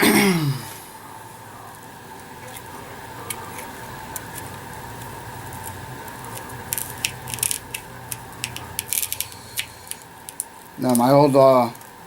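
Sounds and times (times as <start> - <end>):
faint steady hum: 0.0 - 12.0
small parts clicking and tapping: 3.3 - 11.1.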